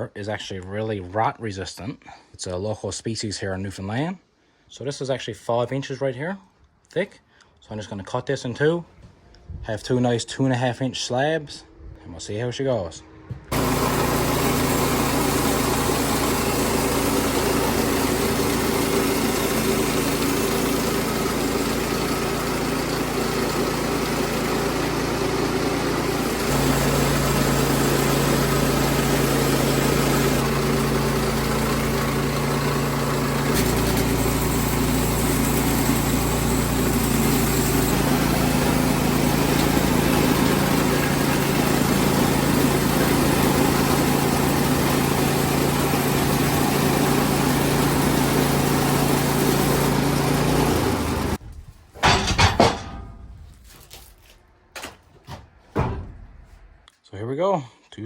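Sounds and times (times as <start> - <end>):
sawmill engine running: 13.2 - 56.8
band blade cutting wood: 13.5 - 51.4.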